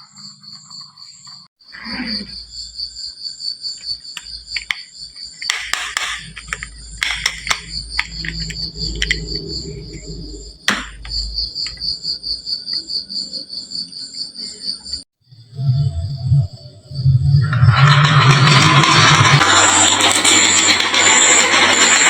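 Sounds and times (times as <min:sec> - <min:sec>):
pulsing cricket-like chirp: 0:00.0 - 0:22.0
marbles knocking on track: 0:04.2 - 0:09.3, 0:10.7 - 0:11.8, 0:17.5 - 0:22.0
marbles rolling on wooden track: 0:04.4 - 0:10.1, 0:17.4 - 0:22.0.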